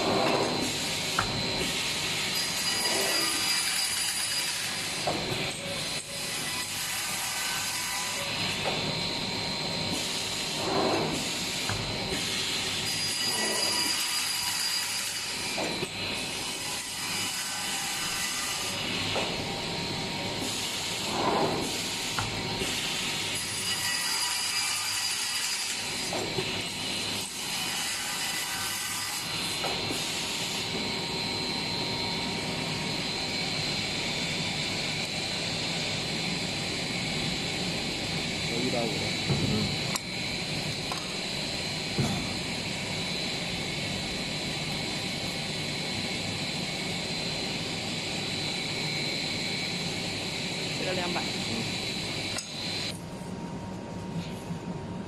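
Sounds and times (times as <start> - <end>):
saw cutting polystyrene: 12.4 - 15.6, 16.2 - 19.1, 22.7 - 29.6.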